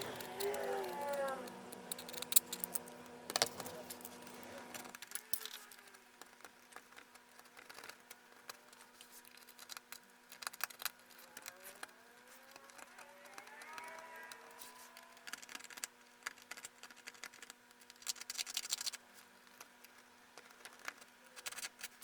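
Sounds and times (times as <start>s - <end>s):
hand tool scraping metal: 0.0s - 5.0s
faint low hum: 0.0s - 22.0s.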